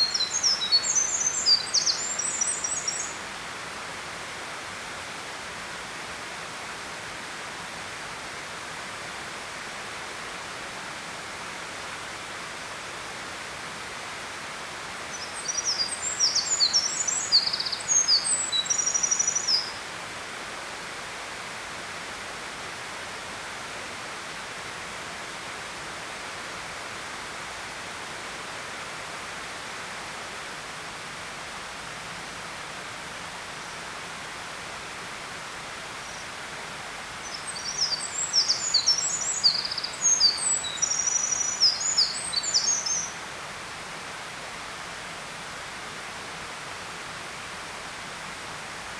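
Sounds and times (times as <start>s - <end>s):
songbird singing: 0.0s - 3.2s, 15.1s - 19.8s, 37.2s - 43.2s.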